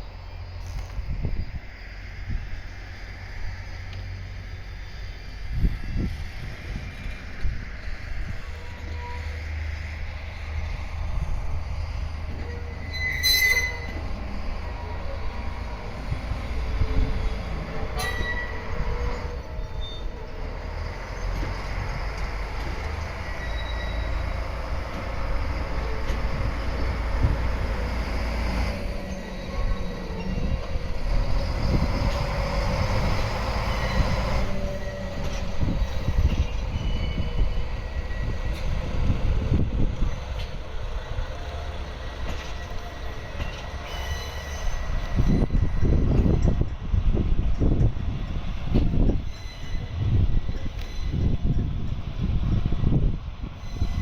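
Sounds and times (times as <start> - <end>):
train low rumble: 0.0 - 54.0
train wheels squealing: 0.0 - 54.0
train cars clanking: 4.8 - 54.0.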